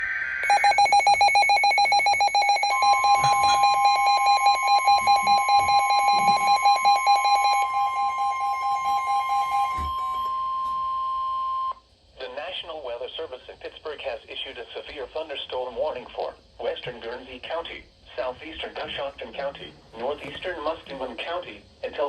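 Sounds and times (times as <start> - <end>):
fast-pulsing alarm beep: 0.0 - 11.7
steady warning alarm tone: 0.0 - 11.8
scratchy data burst: 0.4 - 10.3.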